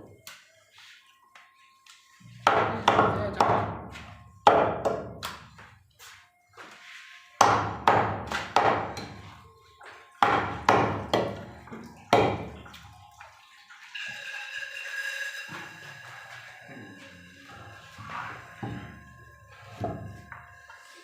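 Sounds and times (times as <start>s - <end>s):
music: 0.0s - 21.0s
cleaver chopping on wooden block: 4.4s - 5.4s, 7.4s - 9.2s, 10.2s - 11.5s, 12.1s - 12.5s.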